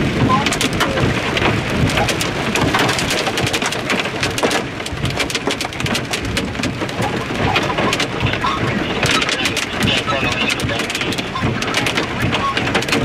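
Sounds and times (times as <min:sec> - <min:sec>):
hail clattering on hard surfaces: 0:00.0 - 0:13.0
wind-driven rain: 0:00.0 - 0:13.0.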